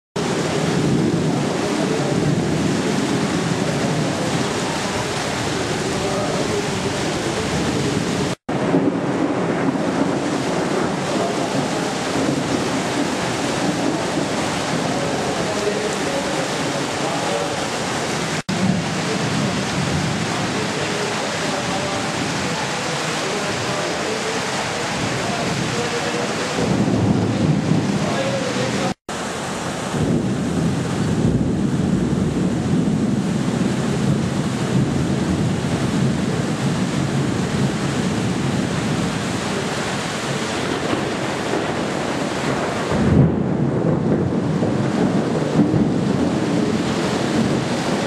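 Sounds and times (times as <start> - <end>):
rain: 0.2 - 48.0
storm rushing: 0.2 - 48.0
wind: 0.2 - 48.0
wind buffeting microphone: 24.8 - 28.9, 29.8 - 48.0.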